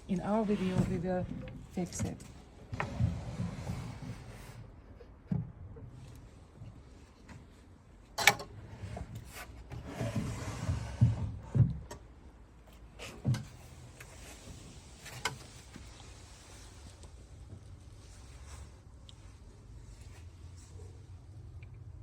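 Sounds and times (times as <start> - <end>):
wooden cabinet sliding: 0.3 - 4.8, 8.6 - 11.9.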